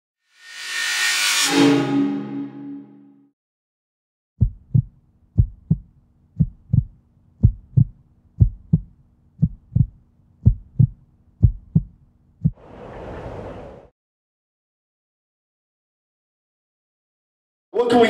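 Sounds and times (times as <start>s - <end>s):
heartbeat thumps: 4.4s - 12.6s.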